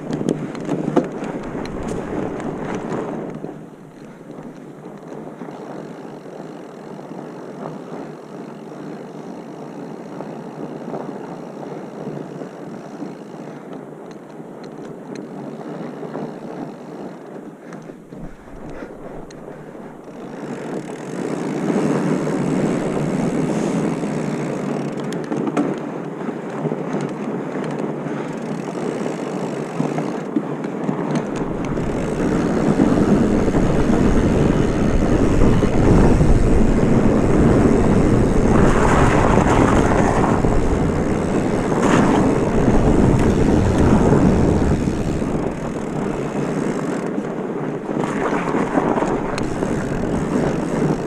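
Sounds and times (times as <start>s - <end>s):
wind rushing over microphone: 0.0s - 5.5s, 17.6s - 28.3s, 30.1s - 51.0s.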